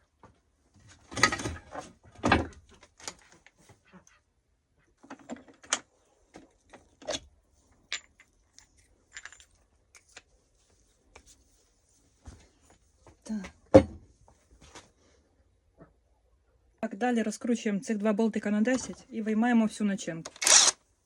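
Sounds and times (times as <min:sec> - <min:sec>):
metal parts clinking: 0:07.9 - 0:10.2, 0:20.3 - 0:20.8.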